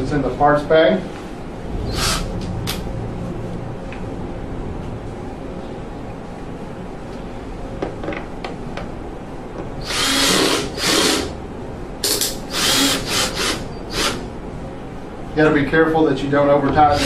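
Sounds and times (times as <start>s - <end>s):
cordless drill driving screws: 9.8s - 11.3s, 12.5s - 14.2s.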